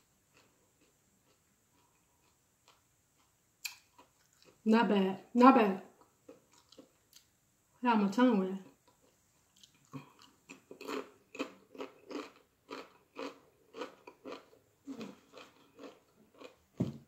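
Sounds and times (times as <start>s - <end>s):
chewing crunchy tortilla chips: 0.3s - 4.6s, 6.0s - 7.3s, 8.6s - 16.6s.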